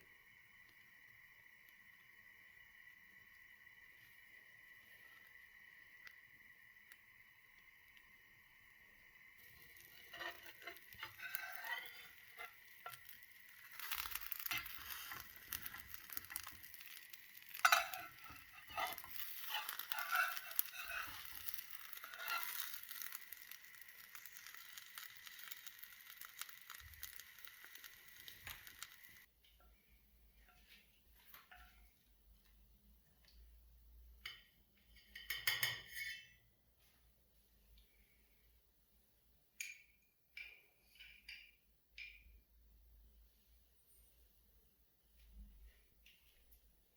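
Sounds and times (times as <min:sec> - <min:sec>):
food sizzling in a frying pan: 0:00.0 - 0:29.3
utensil scraping a pan: 0:09.4 - 0:29.1.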